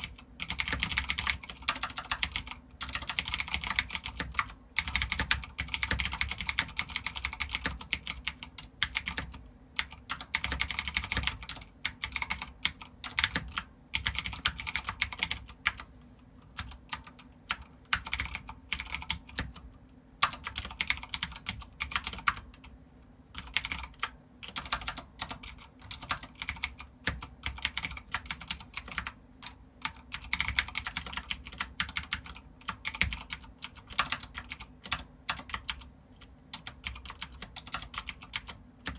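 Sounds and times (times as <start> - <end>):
mechanical keyboard typing: 0.0 - 15.9, 16.5 - 19.6, 20.2 - 22.7, 23.3 - 38.9.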